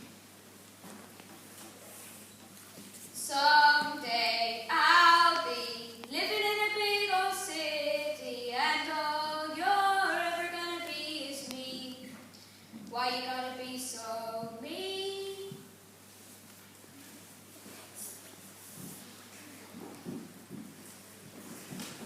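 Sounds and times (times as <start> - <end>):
high young voices singing: 3.2 - 12.1.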